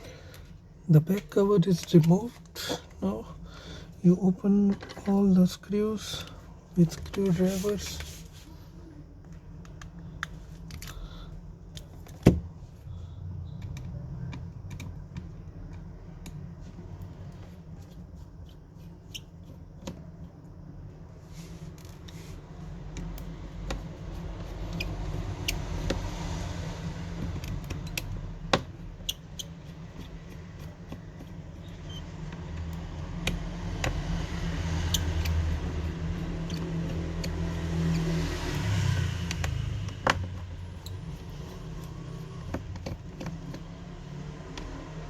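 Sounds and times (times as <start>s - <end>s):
screwdriver clicking on screws: 29.1s - 38.1s.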